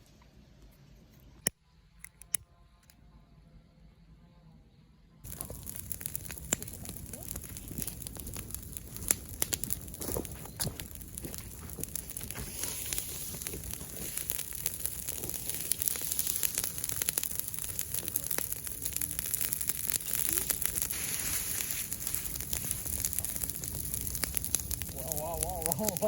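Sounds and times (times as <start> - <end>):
campfire crackling: 5.2 - 26.0.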